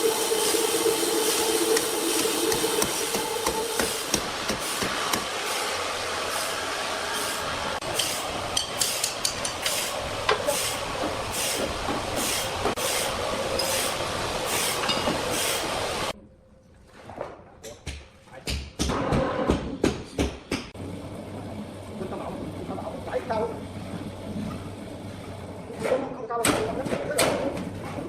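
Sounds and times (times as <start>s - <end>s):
sawmill machinery din: 0.0s - 16.1s, 20.8s - 26.2s.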